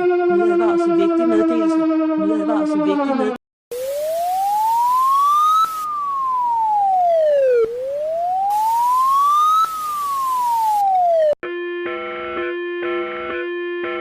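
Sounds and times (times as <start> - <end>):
wailing siren: 0.0 - 14.0
loud hiss: 3.7 - 6.9, 7.8 - 11.0.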